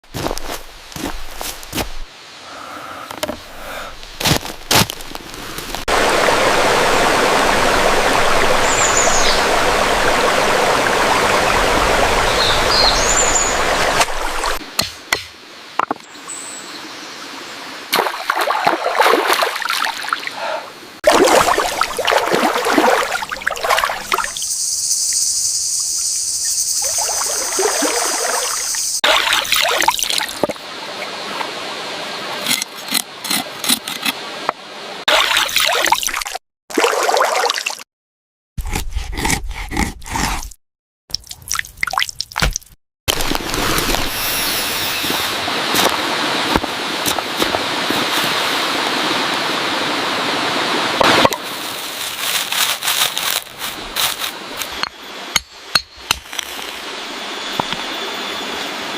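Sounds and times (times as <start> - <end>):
stream water splashing: 4.2 - 15.0, 17.2 - 24.5, 26.8 - 32.7, 35.0 - 37.8, 41.2 - 54.9.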